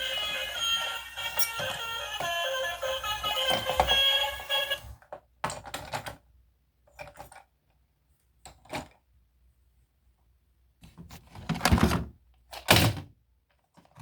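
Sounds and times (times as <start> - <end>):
bright electronic tune: 0.0 - 4.8.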